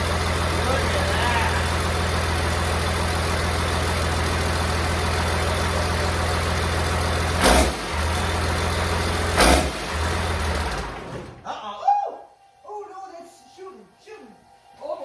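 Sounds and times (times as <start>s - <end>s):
diesel engine idling: 0.0s - 11.4s.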